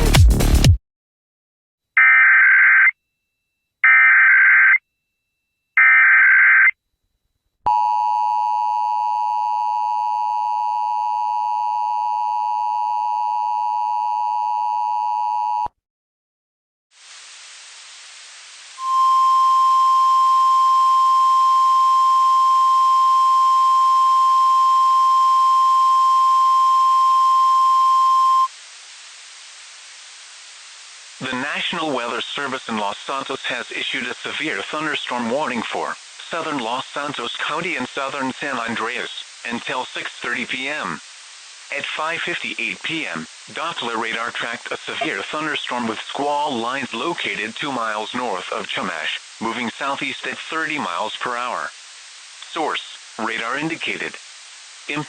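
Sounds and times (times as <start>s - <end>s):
data tone bursts: 18.8s - 28.5s
steady single alarm tone: 18.8s - 28.5s
two-tone attention signal: 18.8s - 28.5s
radio static: 28.5s - 55.0s
radio music: 30.5s - 51.8s, 52.4s - 54.2s.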